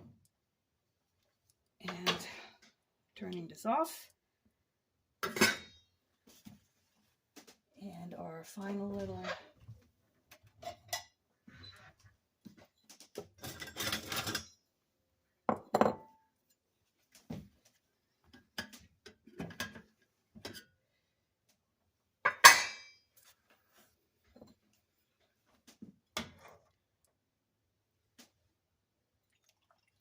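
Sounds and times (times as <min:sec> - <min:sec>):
dishes and utensils clinking: 0:13.4 - 0:14.6, 0:22.3 - 0:23.0.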